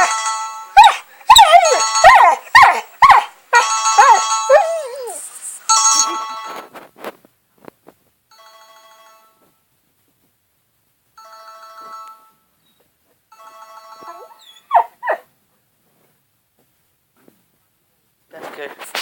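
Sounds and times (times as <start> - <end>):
cell phone ringtone: 0.0 - 0.8, 1.5 - 2.3, 3.6 - 6.7, 8.3 - 9.4, 11.2 - 12.4, 13.3 - 14.4
puppy crying: 0.8 - 6.3, 14.0 - 15.3.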